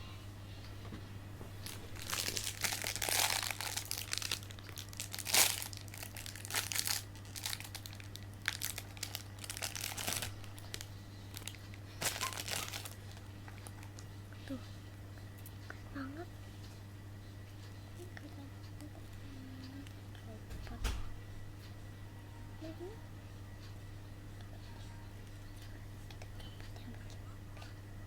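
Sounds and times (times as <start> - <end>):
sticker packaging crinkling: 1.4 - 14.0.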